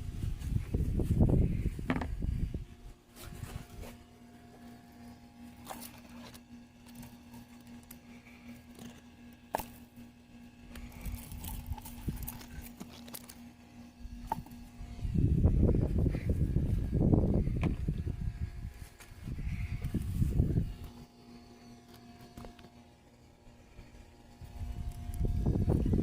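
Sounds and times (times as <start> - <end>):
hands rustling through plants: 0.0 - 8.7
steady low hum: 0.0 - 26.0.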